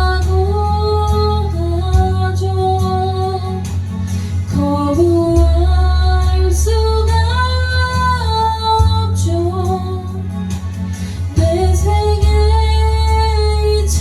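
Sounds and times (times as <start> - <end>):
slow ballad backing track: 0.0 - 14.0.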